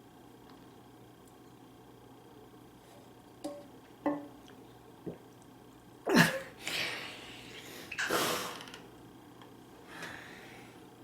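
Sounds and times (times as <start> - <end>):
person sneezing: 6.1 - 7.1, 8.0 - 8.6.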